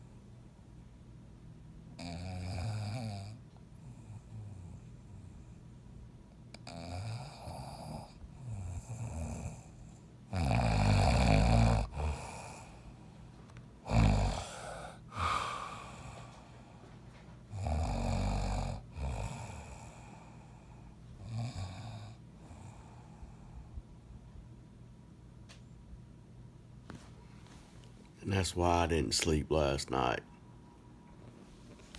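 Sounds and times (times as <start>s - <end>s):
man snoring loudly: 2.0s - 3.4s, 6.6s - 9.7s, 10.3s - 12.8s, 13.9s - 16.4s, 17.5s - 20.4s, 21.2s - 22.9s.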